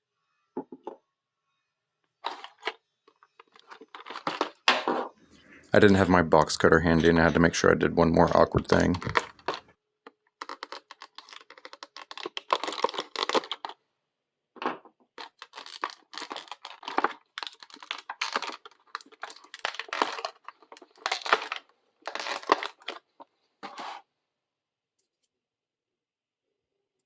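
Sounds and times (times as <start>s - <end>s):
packaging crinkling and tearing: 2.2s - 4.7s, 8.2s - 9.7s, 10.4s - 13.8s, 15.2s - 24.0s.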